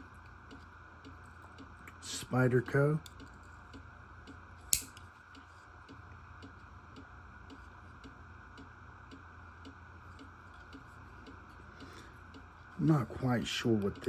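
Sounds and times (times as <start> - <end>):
low steady hum: 0.0 - 14.0
sharp click: 4.7 - 5.0.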